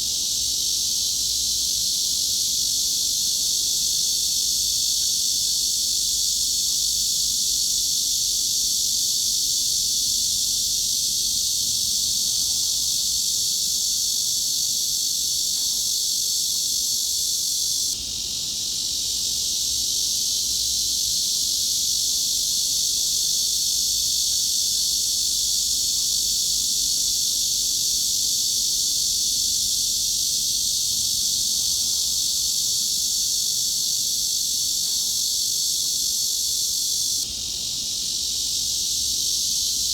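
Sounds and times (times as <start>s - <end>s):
cicadas buzzing: 0.0s - 39.9s.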